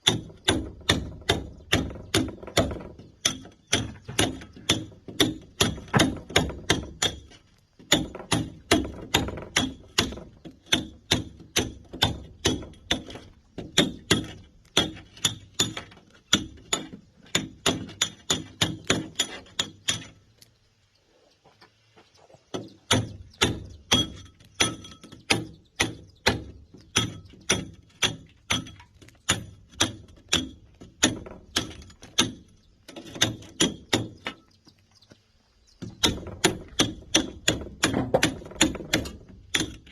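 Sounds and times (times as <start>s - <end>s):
sledgehammer striking steel chisel: 0.0s - 20.2s, 22.9s - 34.4s, 35.8s - 39.9s.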